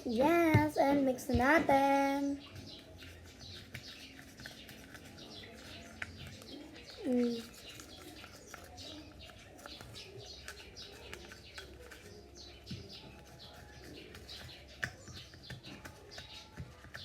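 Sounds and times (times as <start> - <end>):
faint bird chirping: 0.0 - 17.0.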